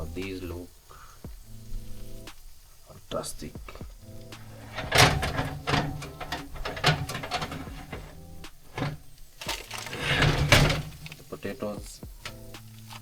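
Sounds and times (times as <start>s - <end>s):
oven fan humming: 3.2s - 12.6s
baking tray and utensils clattering: 4.3s - 12.5s.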